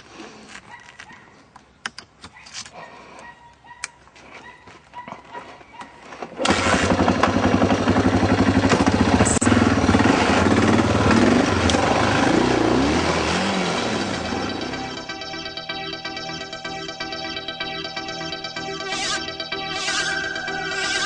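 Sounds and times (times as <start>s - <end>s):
motorcycle engine running: 6.4s - 17.2s.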